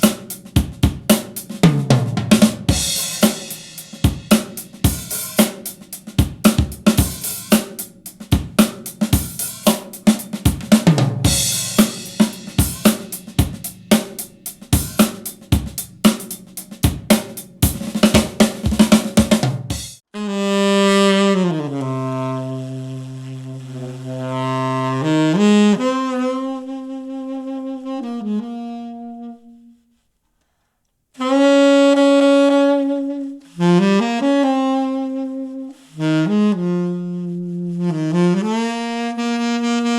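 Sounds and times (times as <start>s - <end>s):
drum kit playing a beat: 0.0s - 20.0s
saxophone low held notes: 20.2s - 29.9s, 31.2s - 39.9s.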